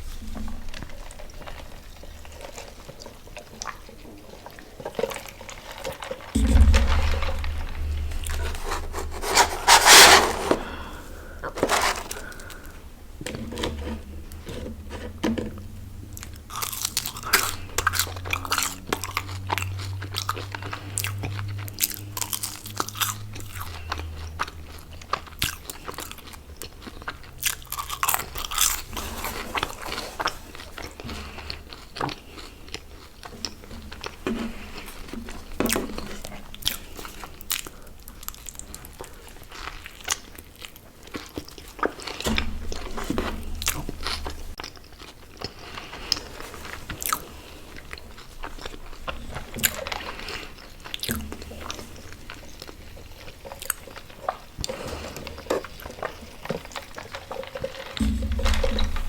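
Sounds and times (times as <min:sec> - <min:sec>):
crunchy food chewing: 0:16.2 - 0:35.1, 0:35.9 - 0:59.0.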